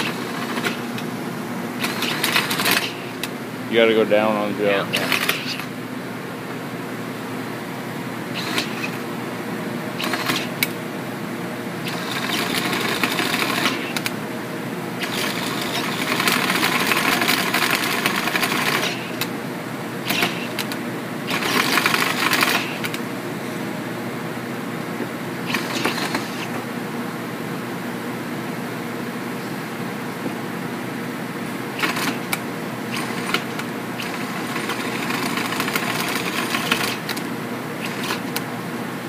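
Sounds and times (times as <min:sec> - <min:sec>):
cordless drill motor running: 0:01.8 - 0:03.3, 0:08.3 - 0:09.0, 0:10.0 - 0:10.6, 0:11.8 - 0:14.2, 0:15.0 - 0:19.3, 0:20.0 - 0:23.0, 0:25.4 - 0:26.6, 0:31.8 - 0:38.4.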